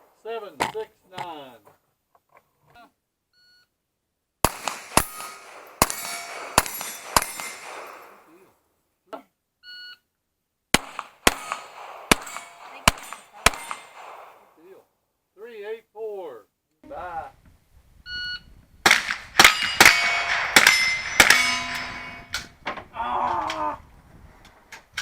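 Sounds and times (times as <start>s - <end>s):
pistol shots: 4.4s - 8.3s, 10.8s - 14.6s, 18.9s - 22.3s
steel plates ringing: 4.5s - 8.3s, 10.8s - 14.6s, 19.4s - 22.5s.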